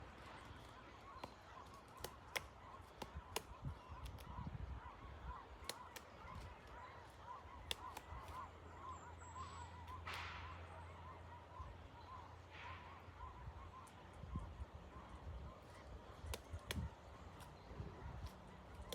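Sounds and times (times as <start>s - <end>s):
woodpecker pecking at log: 0.2s - 4.3s, 5.6s - 8.4s, 15.8s - 17.6s.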